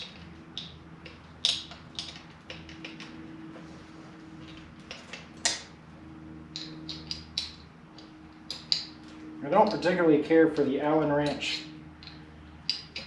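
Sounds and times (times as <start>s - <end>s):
steady low hum: 0.0s - 13.0s
light metallic clicks of tools: 11.2s - 13.0s.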